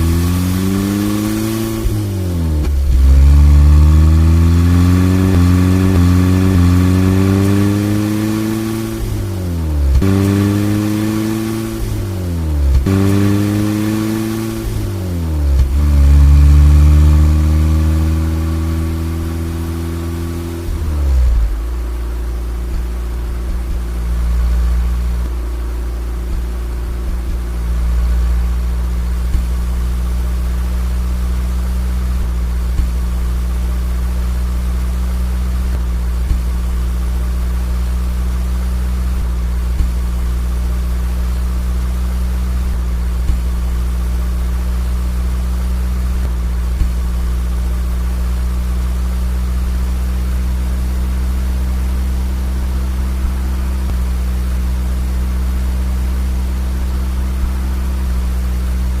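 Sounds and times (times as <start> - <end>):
car engine running: 0.0 - 59.0.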